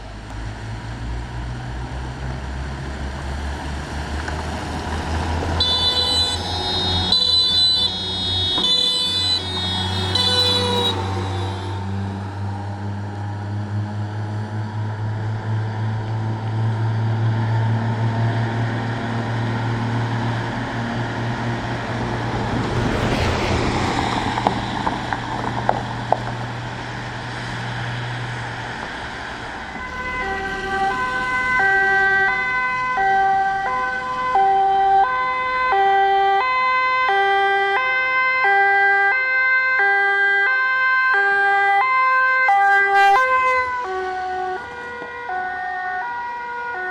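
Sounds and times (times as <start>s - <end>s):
heavy vehicle engine passing: 0.0s - 36.0s, 42.7s - 46.6s
two-tone emergency siren: 5.0s - 16.2s, 28.2s - 46.9s.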